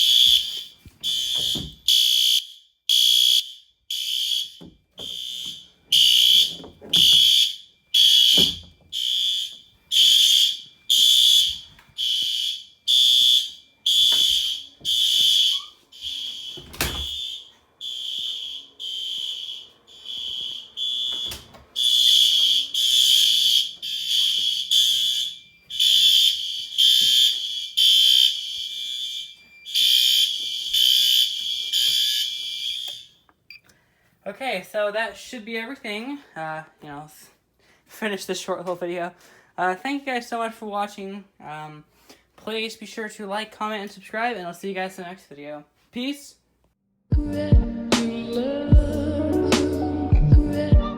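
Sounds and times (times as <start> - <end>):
fire alarm horns pulsing: 0.0 - 33.3.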